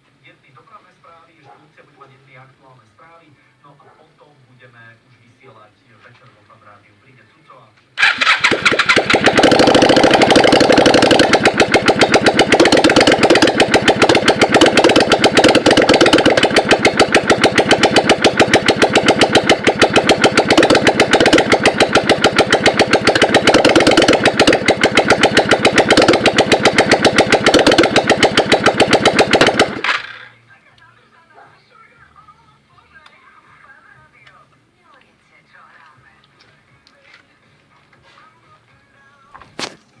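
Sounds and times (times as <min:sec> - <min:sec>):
motorcycle engine idling loud: 0:08.0 - 0:30.3.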